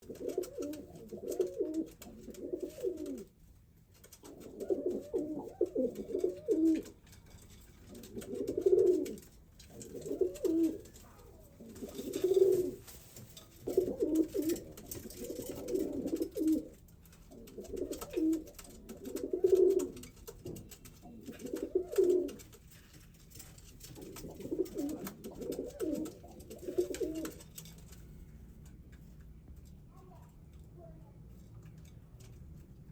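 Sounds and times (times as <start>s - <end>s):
pigeon cooing: 0.0s - 3.3s, 4.2s - 7.0s, 7.9s - 12.8s, 13.6s - 22.5s, 24.0s - 27.4s.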